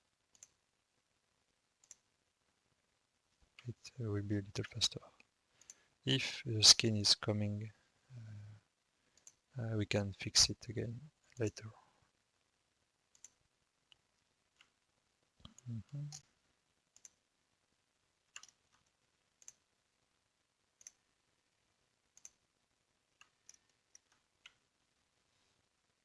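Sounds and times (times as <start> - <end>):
computer mouse clicking: 0.3 - 0.6, 1.8 - 2.1, 9.2 - 9.4, 13.1 - 13.4, 17.0 - 17.2, 18.3 - 19.7, 20.8 - 21.0, 22.2 - 22.4, 23.2 - 24.6.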